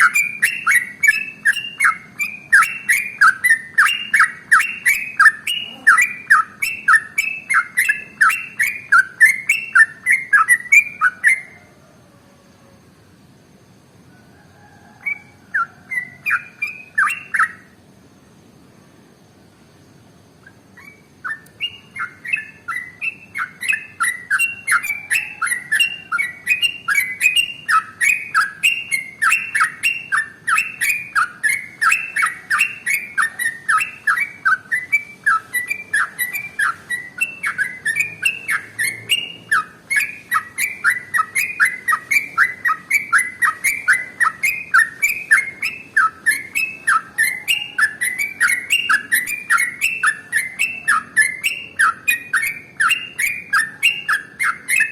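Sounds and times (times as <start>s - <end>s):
bird singing rapid chirps: 0.0s - 11.8s, 14.6s - 54.9s.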